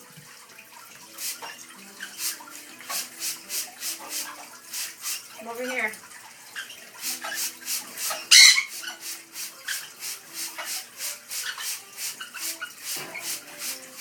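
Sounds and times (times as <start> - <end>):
parrot splashing in water: 0.0 - 14.0
parrot squawk: 8.1 - 9.0.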